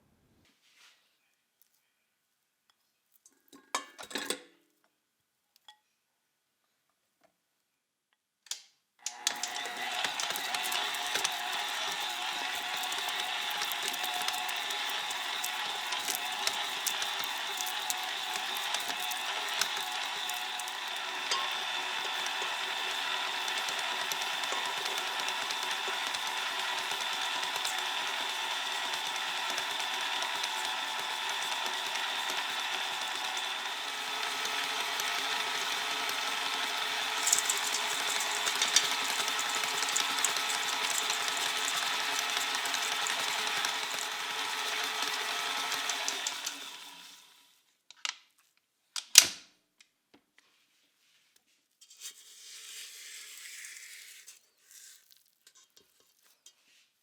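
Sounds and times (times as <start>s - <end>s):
kitchen appliance motor whine: 9.0s - 47.6s.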